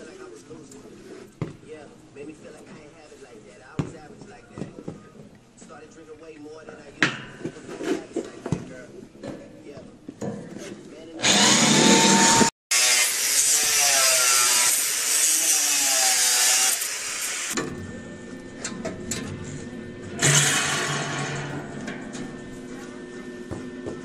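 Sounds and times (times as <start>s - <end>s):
power tool whining on steel: 11.2s - 22.4s.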